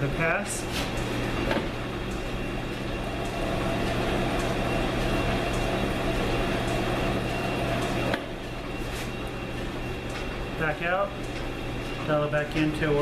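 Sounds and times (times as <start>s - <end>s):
lathe motor and gear hum: 0.0s - 13.0s
lathe tool cutting metal: 2.0s - 8.7s.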